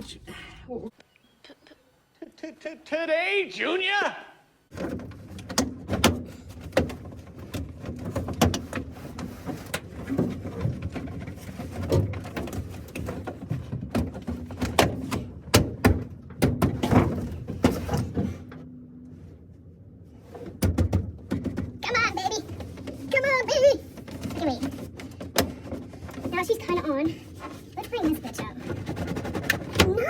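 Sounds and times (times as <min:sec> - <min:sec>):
faint hum: 0:00.0 - 0:04.7
knocks and clunks of parts: 0:04.7 - 0:18.8, 0:20.3 - 0:30.0.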